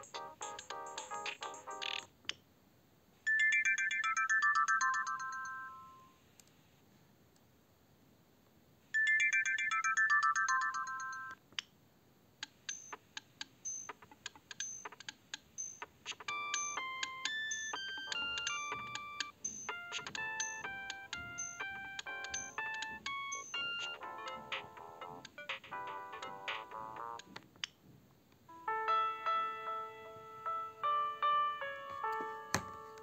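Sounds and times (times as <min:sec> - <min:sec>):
phone electronic ringtone: 0:00.0 - 0:02.1, 0:03.3 - 0:06.2, 0:09.0 - 0:11.4, 0:15.6 - 0:27.2.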